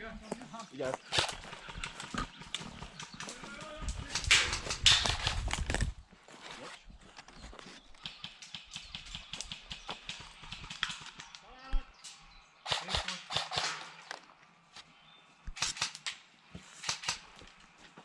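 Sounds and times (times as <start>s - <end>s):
footsteps on rough ground: 0.0s - 8.1s, 16.4s - 18.0s.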